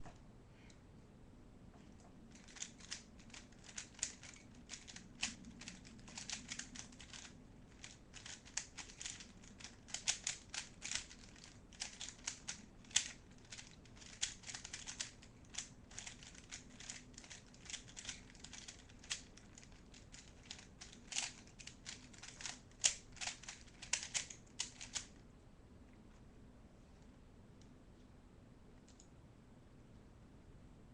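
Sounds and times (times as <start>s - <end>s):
plastic puzzle cube clicking: 2.3s - 25.2s.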